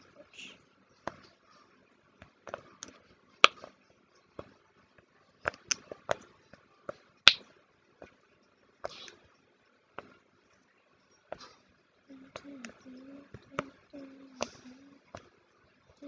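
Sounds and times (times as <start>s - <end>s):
fidget toys clicking and tapping: 12.1s - 16.0s.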